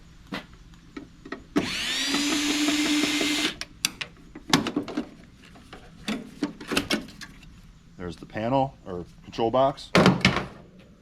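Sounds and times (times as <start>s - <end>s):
power drill spinning: 1.6s - 3.6s.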